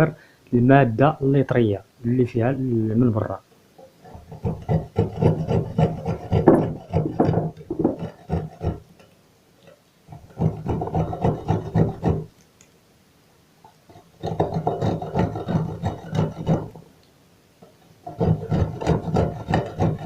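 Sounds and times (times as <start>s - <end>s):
cone rasping on a grater: 4.0s - 9.1s, 10.1s - 12.4s, 13.9s - 16.8s, 18.0s - 20.0s.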